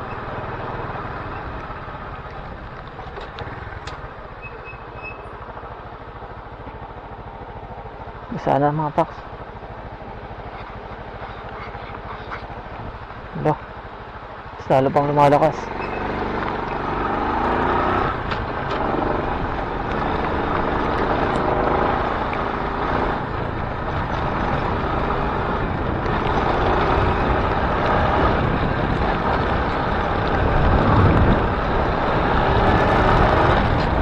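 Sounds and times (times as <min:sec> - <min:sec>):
motorcycle engine running: 0:00.0 - 0:34.0
wind noise on microphone: 0:23.2 - 0:34.0.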